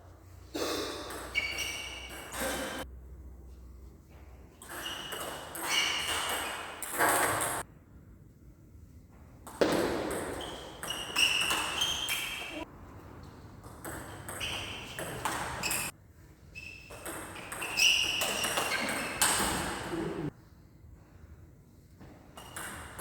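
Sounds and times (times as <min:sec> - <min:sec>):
sports shoes squeaking on court: 0:01.1 - 0:02.9, 0:04.6 - 0:07.6, 0:09.7 - 0:20.3, 0:22.3 - 0:23.0.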